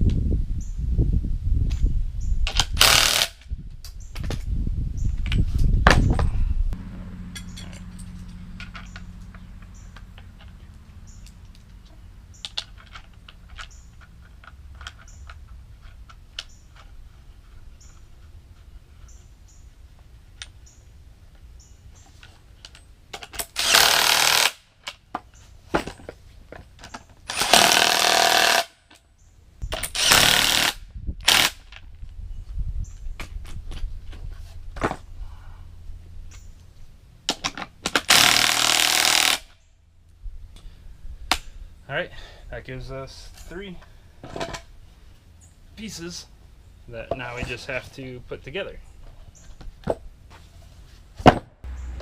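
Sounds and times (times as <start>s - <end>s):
power tool tightening nuts: 2.5s - 3.4s, 23.4s - 24.6s, 27.3s - 28.7s, 29.8s - 31.6s, 37.9s - 39.6s.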